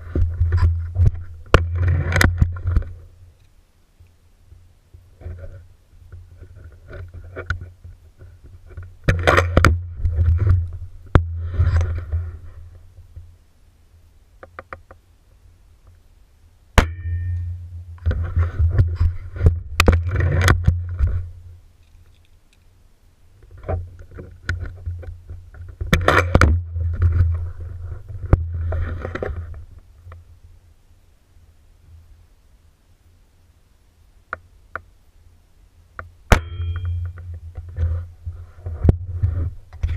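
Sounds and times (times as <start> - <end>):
brief metallic ring: 16.8 - 17.6, 36.3 - 37.2
small clicks: 21.8 - 22.7.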